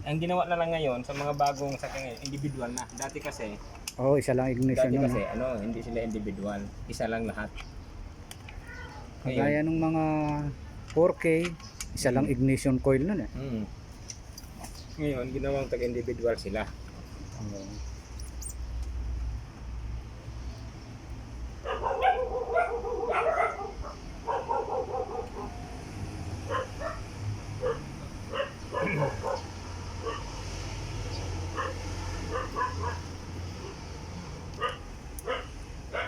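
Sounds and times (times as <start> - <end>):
dog barking: 4.8 - 5.6, 21.6 - 25.6, 26.4 - 27.0, 27.6 - 30.4, 31.5 - 33.8, 34.6 - 36.0.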